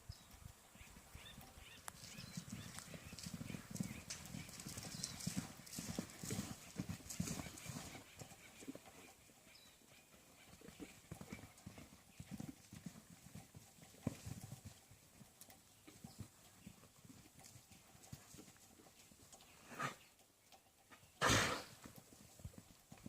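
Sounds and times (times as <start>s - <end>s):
horse hooves clopping: 0.0s - 23.0s
horse breath rush: 21.2s - 21.8s.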